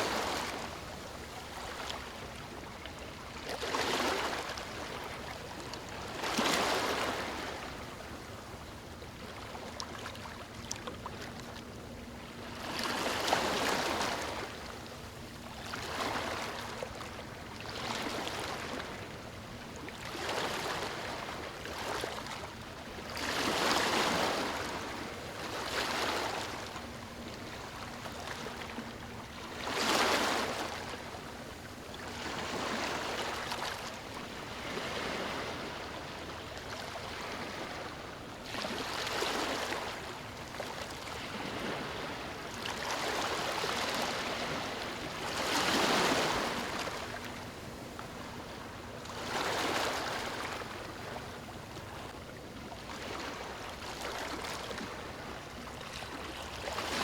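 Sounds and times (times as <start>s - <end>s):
small waves washing up beach: 0.0s - 8.3s, 20.0s - 52.2s.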